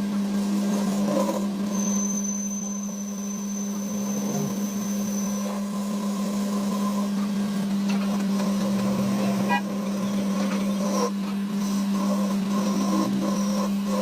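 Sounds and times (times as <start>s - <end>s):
faint high whistle: 1.6s - 5.6s
machine motor humming: 5.8s - 14.0s.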